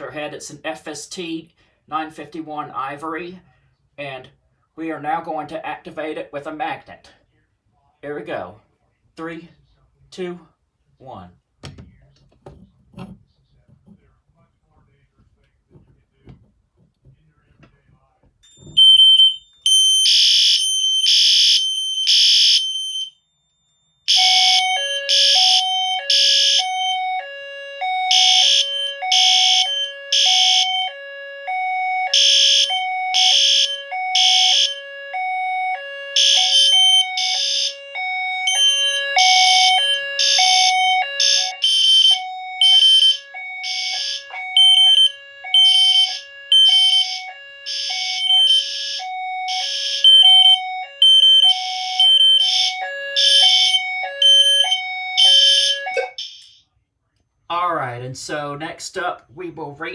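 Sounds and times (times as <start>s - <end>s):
fire alarm horn blasts: 18.7s - 56.6s.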